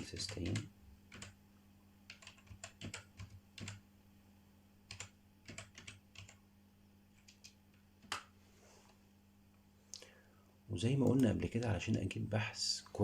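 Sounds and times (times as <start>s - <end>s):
faint low hum: 0.0s - 13.0s
typing on computer keyboard: 0.2s - 1.4s, 2.1s - 3.8s, 4.9s - 6.4s, 7.2s - 8.3s.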